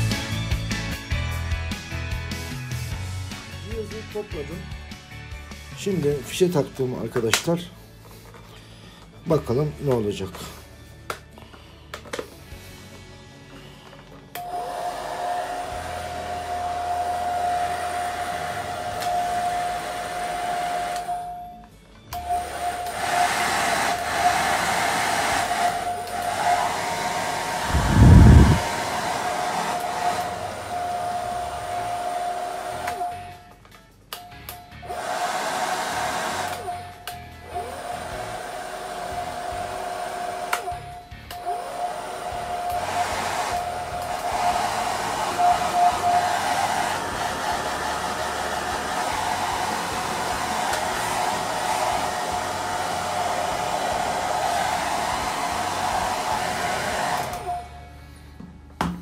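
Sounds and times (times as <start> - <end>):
hair dryer running: 14.3 - 21.3, 22.1 - 33.4, 34.8 - 57.9.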